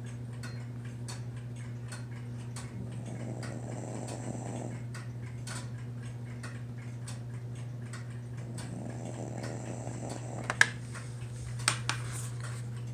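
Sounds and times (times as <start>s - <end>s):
clock ticking: 0.0s - 11.8s
steady low hum: 0.0s - 12.9s
pet snoring softly: 2.6s - 4.9s, 8.4s - 11.2s.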